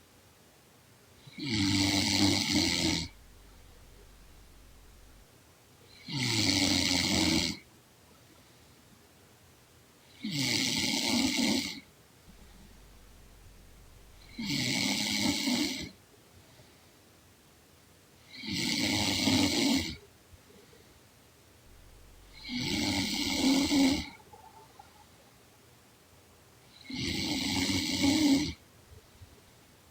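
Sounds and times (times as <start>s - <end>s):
woman snoring: 1.4s - 5.2s, 10.2s - 15.9s, 21.7s - 24.5s, 26.8s - 28.6s.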